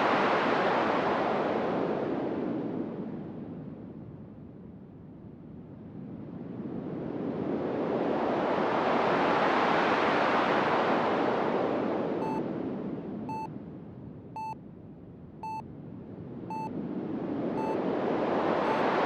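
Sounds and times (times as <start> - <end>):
short electronic beeps: 14.4 - 14.6, 15.4 - 15.6, 16.5 - 16.7.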